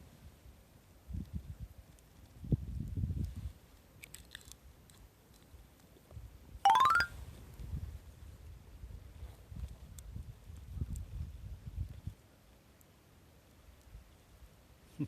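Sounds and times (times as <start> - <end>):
rising electronic chirp: 6.7 - 7.1.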